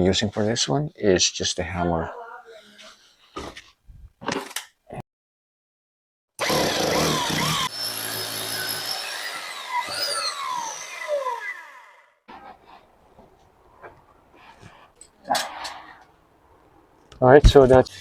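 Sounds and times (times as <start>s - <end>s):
power tool running: 6.4s - 12.2s.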